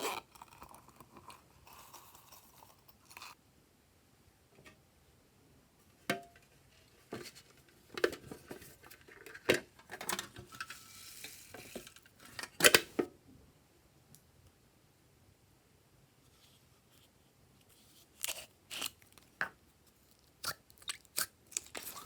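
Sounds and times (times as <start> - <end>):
slime stirred by hand: 0.0 - 3.4, 17.6 - 22.0.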